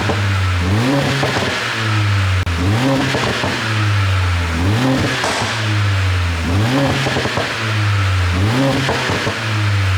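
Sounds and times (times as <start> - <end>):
car engine idling and revving: 0.0 - 9.9
exhaust pops and crackles: 5.0 - 7.7.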